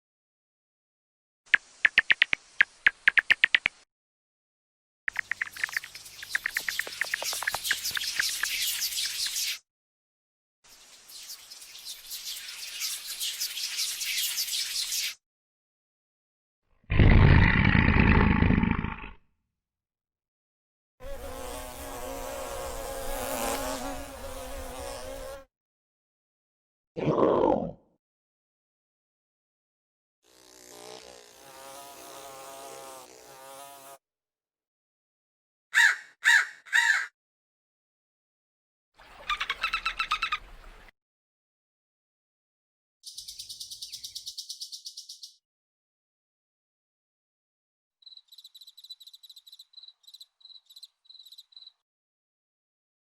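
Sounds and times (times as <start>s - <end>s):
flying insect buzzing: 21.0s - 25.5s, 30.2s - 34.0s.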